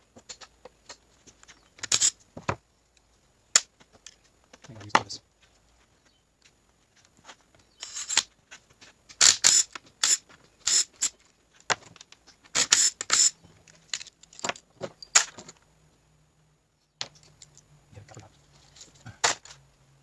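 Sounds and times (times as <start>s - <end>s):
metal tools clinking and scraping: 7.7s - 8.3s, 12.7s - 15.6s, 18.5s - 19.6s.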